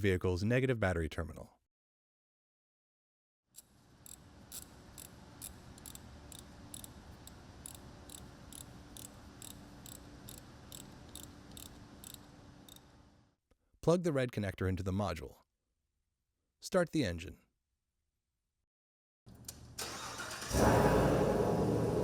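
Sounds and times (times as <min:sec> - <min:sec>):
ratchet wrench clicking: 0:03.6 - 0:12.9.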